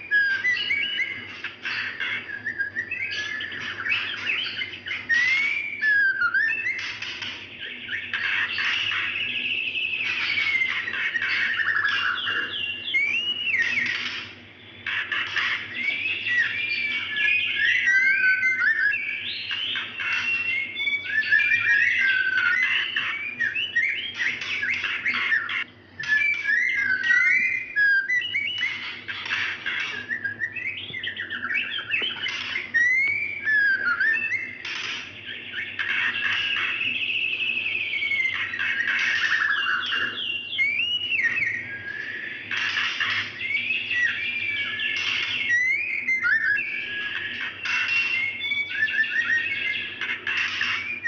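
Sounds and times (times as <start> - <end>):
bird whistling: 0.0 - 51.0
bird chattering rattles: 0.3 - 18.6.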